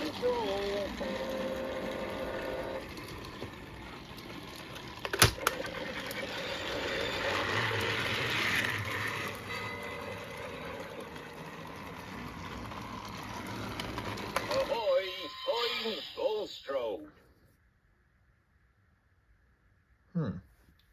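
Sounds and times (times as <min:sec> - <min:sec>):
toy motor whirring: 0:00.0 - 0:16.5.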